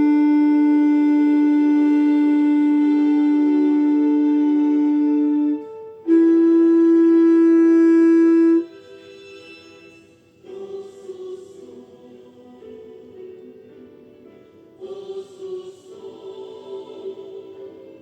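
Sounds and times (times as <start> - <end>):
clarinet holding long notes: 0.0 - 8.8
quiet music with chords: 0.0 - 18.0.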